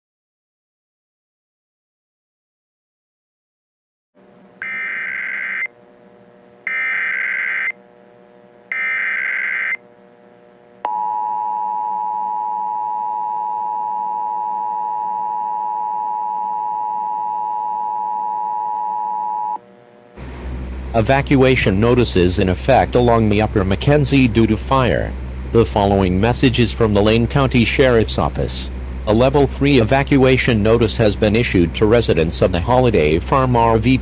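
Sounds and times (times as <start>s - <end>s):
faint steady hum: 4.2s - 34.0s
digital data header bursts: 4.6s - 5.7s, 6.7s - 7.8s, 8.7s - 9.8s
two-tone attention signal: 4.6s - 5.7s, 6.7s - 7.8s.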